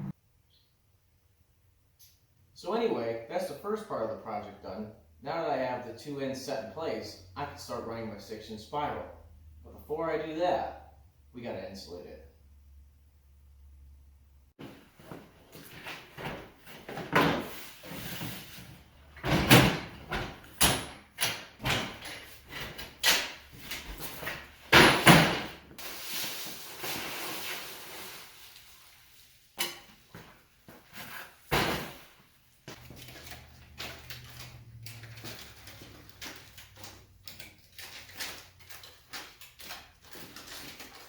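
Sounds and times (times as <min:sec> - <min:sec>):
rustling of materials: 0:25.7 - 0:41.0
knocks and clunks of handled materials: 0:29.6 - 0:41.0.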